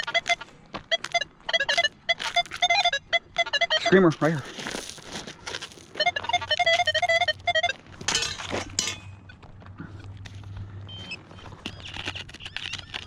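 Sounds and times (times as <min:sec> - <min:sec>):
metal detector high tone: 0:00.0 - 0:04.4, 0:06.0 - 0:07.8
digging in stony ground: 0:03.8 - 0:07.3, 0:07.9 - 0:13.0.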